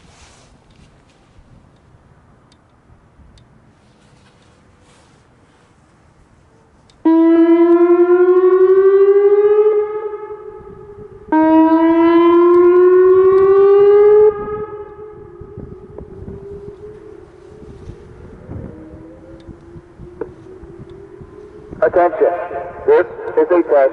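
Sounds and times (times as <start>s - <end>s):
rising siren whoops: 7.0s - 23.9s
siren echo: 7.0s - 23.9s.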